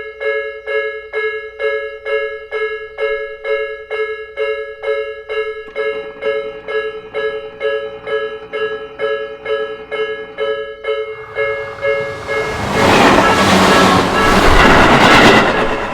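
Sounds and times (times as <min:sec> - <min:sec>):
level crossing warning bell: 0:00.0 - 0:15.9
train approaching rumble: 0:05.6 - 0:15.9.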